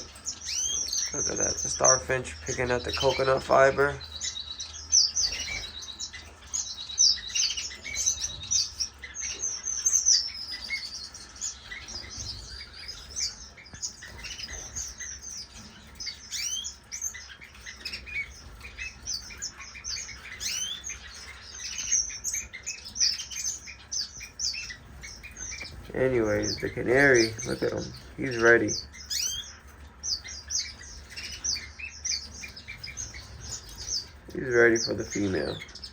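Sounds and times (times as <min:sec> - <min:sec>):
finches chirping: 0:00.0 - 0:35.9.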